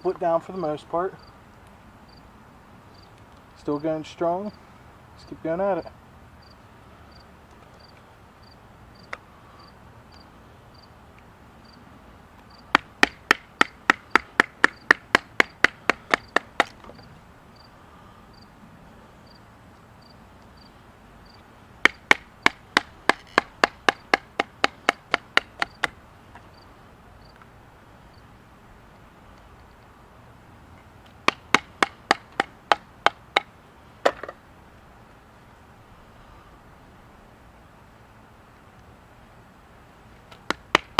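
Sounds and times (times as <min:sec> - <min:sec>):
insect chirps: 0:01.2 - 0:01.4, 0:02.0 - 0:02.3, 0:02.9 - 0:03.2, 0:06.4 - 0:11.0, 0:11.6 - 0:12.8, 0:14.0 - 0:18.6, 0:19.2 - 0:24.2, 0:26.5 - 0:27.4.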